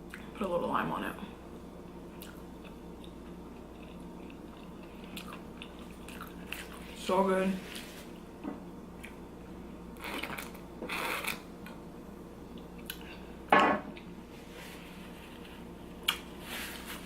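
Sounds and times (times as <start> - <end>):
faint steady hum: 0.0 - 17.0
person chewing: 2.2 - 6.8.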